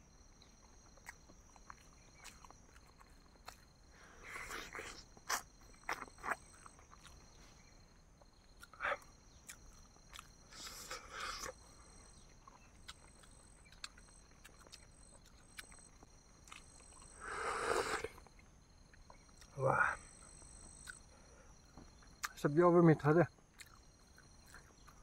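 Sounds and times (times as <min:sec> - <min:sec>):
lip-smacks and chewing clicks: 0:00.5 - 0:03.7, 0:04.3 - 0:07.2, 0:08.5 - 0:17.2, 0:18.0 - 0:19.6, 0:23.5 - 0:25.0
breathy intake: 0:17.1 - 0:18.2.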